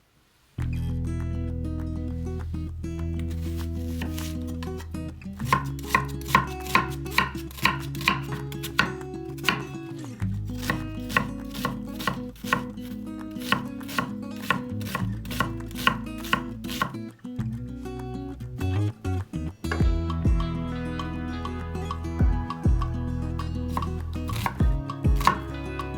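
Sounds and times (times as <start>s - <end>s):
background music: 0.7s - 25.9s
knife chopping on cutting board: 3.4s - 4.6s, 5.4s - 9.7s, 10.6s - 17.0s, 23.7s - 25.5s.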